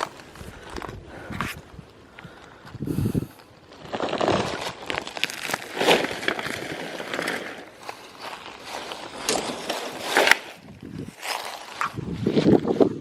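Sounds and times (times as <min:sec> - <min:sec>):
footsteps through dry grass: 0:03.6 - 0:13.0.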